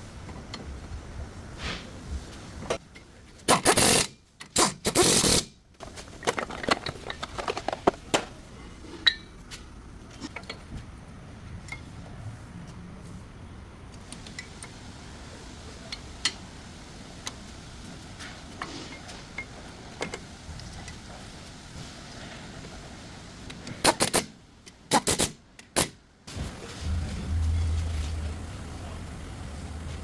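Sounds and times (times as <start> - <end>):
low steady hum: 26.4 - 30.0.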